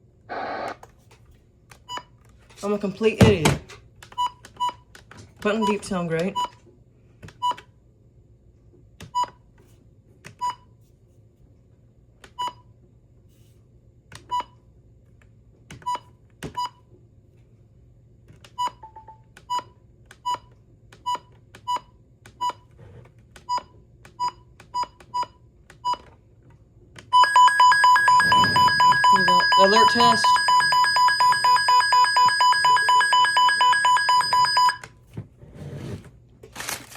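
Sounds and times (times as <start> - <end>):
radio button beeps: 27.2 - 34.8
rapidly pulsing alarm tone: 27.2 - 34.8.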